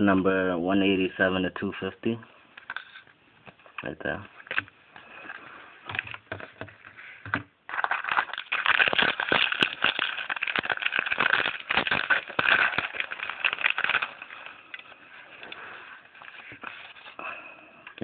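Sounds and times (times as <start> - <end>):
foil wrapper tearing and crinkling: 7.7 - 17.2.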